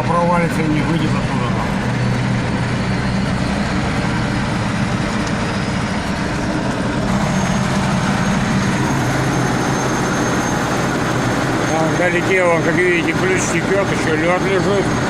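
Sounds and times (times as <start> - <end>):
diesel tractor engine running: 0.0 - 15.0
thin high whine: 7.1 - 12.2.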